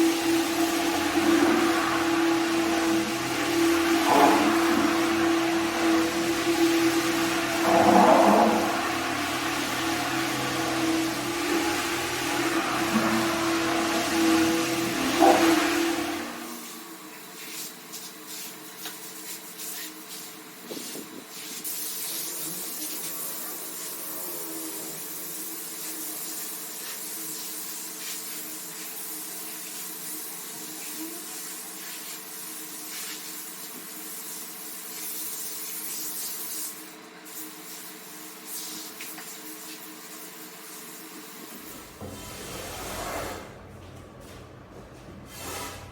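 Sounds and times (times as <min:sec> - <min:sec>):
hissing carpet scrubbing: 0:00.0 - 0:16.5, 0:45.2 - 0:45.9.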